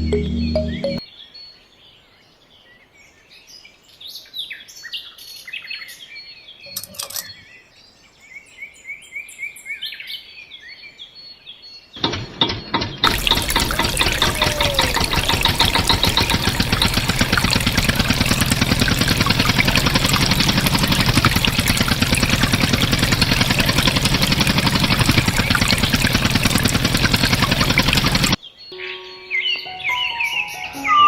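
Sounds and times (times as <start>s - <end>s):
small birds chirping: 12.7s - 31.0s.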